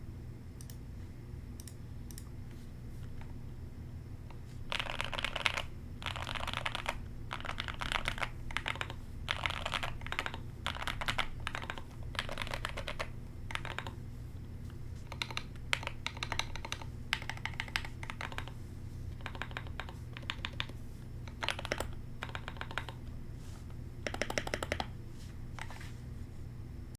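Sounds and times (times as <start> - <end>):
keyboard typing: 4.7 - 14.0, 15.0 - 23.0, 24.0 - 25.8.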